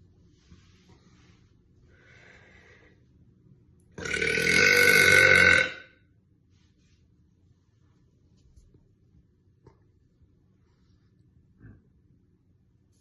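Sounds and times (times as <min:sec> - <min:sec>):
woman burping: 0:04.0 - 0:05.9.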